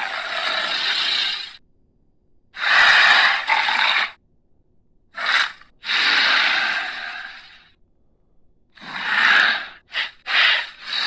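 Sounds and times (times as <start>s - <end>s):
creature breathy exhale: 0.0s - 1.6s, 5.2s - 7.7s, 8.8s - 11.0s.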